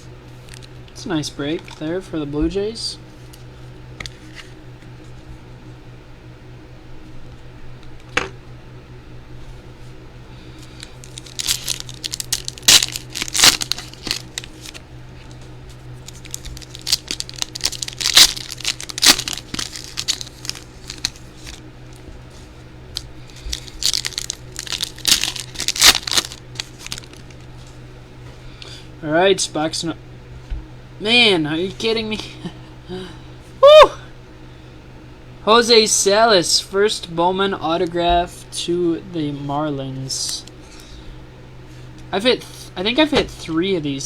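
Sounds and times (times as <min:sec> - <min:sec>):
steady low hum: 0:00.0 - 0:44.0
foil wrappers crinkling and tearing: 0:10.6 - 0:27.8.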